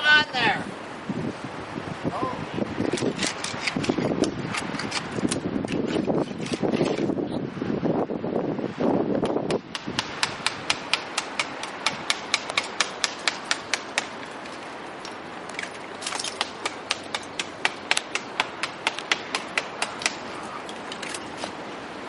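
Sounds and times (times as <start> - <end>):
hand tool striking brick: 9.2 - 14.2, 16.1 - 20.3.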